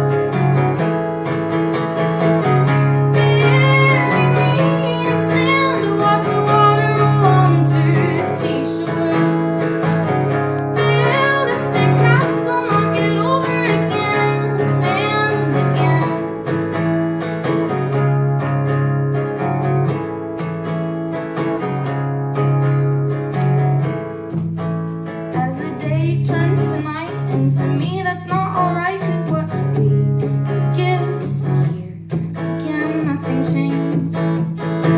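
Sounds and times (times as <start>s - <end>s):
acoustic guitar strummed: 0.0s - 34.9s
woman singing: 2.8s - 16.6s, 25.3s - 34.9s.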